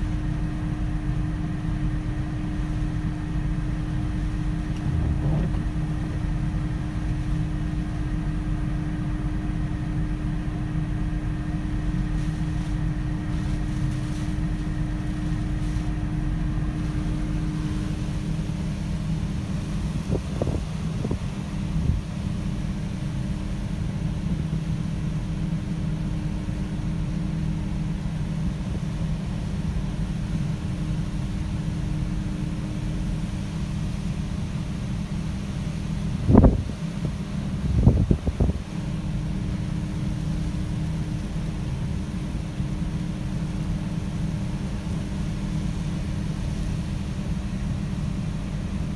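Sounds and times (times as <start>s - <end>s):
steady hum: 0.0s - 22.7s
strong wind: 3.4s - 9.6s, 16.4s - 22.1s, 36.2s - 38.9s
heavy surf: 3.6s - 9.8s
brief thumps: 4.7s - 6.4s.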